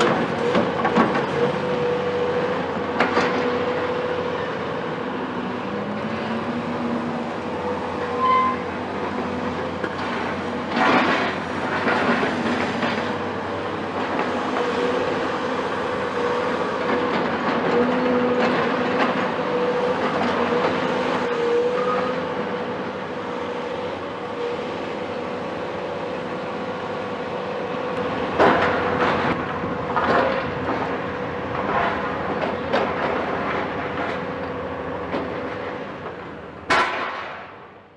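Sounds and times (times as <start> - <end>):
excavator diesel engine whining: 0.0 - 37.9.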